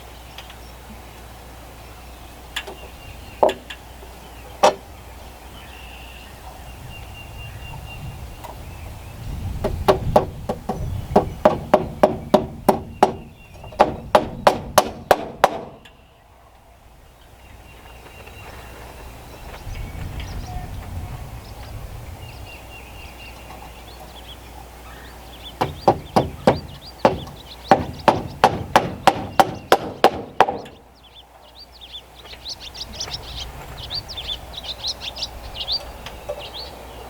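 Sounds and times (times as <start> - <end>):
hammer striking nails into wood: 3.4 - 3.7, 4.6 - 4.8, 9.6 - 15.9, 25.6 - 30.8.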